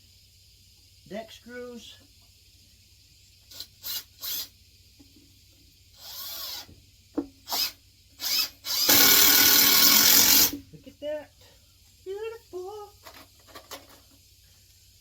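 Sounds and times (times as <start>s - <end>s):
power drill driving screw: 3.5s - 4.5s, 6.0s - 6.7s, 7.5s - 10.6s
handling knocks and clicks: 13.0s - 14.1s.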